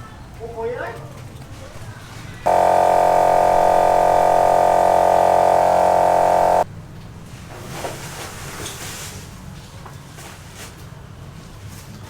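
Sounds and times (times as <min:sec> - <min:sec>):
loud buzzing tone: 0:02.5 - 0:06.6.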